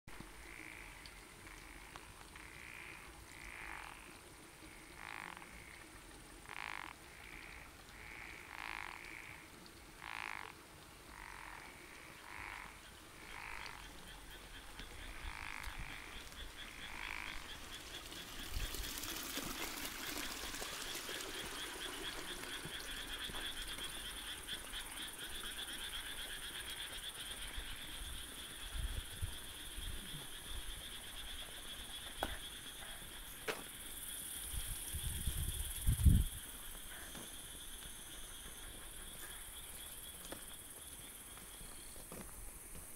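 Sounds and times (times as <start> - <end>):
frogs croaking: 0.1 - 42.9
high-pitched frog trill: 10.0 - 27.9.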